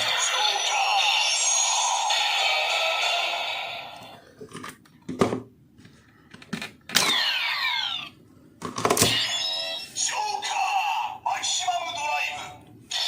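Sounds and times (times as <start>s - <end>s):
toy electronic sound effects: 0.0s - 4.2s, 7.0s - 8.2s, 9.0s - 10.8s.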